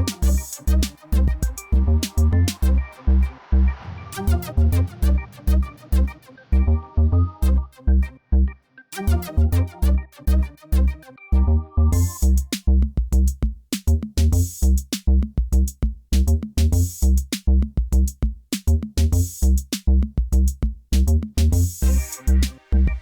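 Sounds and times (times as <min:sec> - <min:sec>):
electronic drum machine beat: 0:00.0 - 0:02.8, 0:12.0 - 0:23.0.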